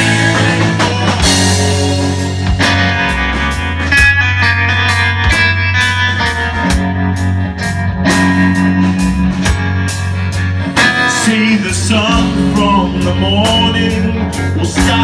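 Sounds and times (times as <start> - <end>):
drum beat: 0.0 - 7.2
bass guitar: 0.0 - 15.0
electric guitar chords: 0.0 - 15.0.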